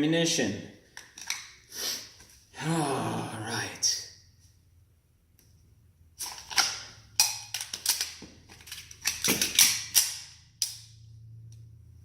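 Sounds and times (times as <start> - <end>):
pistol slide racking: 6.2 - 10.9.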